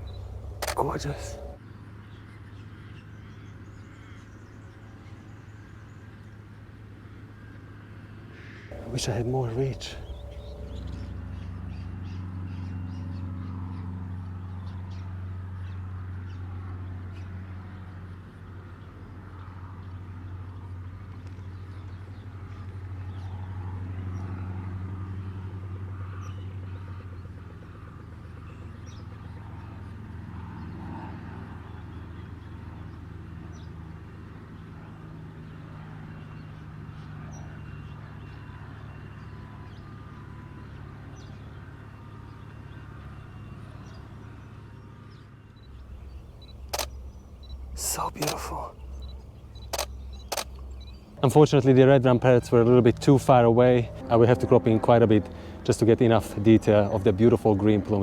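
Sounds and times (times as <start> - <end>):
low engine-like hum: 0.0 - 7.2, 8.7 - 58.0
short bird chirps: 8.7 - 11.1, 46.0 - 51.0.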